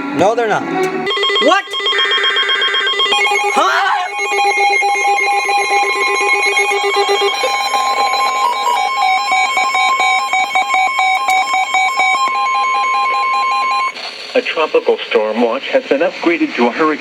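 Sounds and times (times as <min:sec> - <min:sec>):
weather radio warning alarm tone: 0:00.8 - 0:14.4
pulsing electronic alert beeps: 0:01.0 - 0:14.4.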